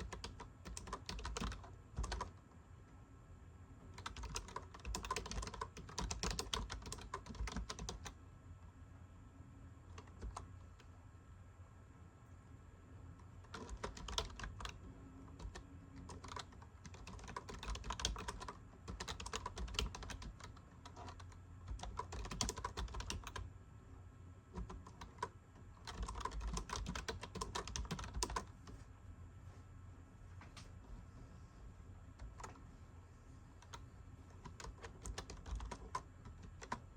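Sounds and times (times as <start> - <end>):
computer keyboard typing: 0.0 - 2.4, 3.9 - 8.2, 9.9 - 10.9, 13.3 - 23.5, 24.5 - 28.6, 32.2 - 32.6, 33.6 - 36.9.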